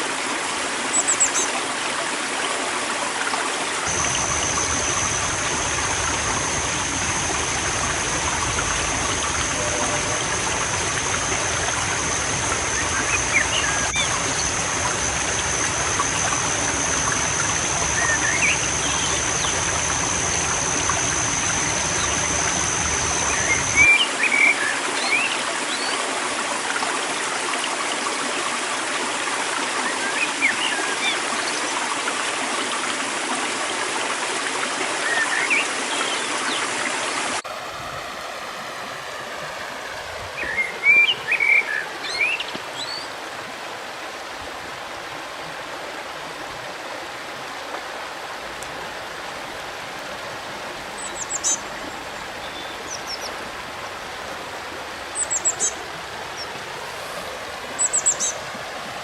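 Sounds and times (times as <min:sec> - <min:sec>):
river water running: 0:00.0 - 0:59.0
small birds chirping: 0:55.2 - 0:58.4.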